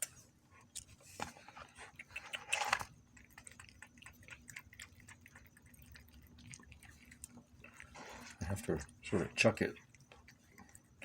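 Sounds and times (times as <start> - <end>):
cat chewing food: 0.6 - 11.0.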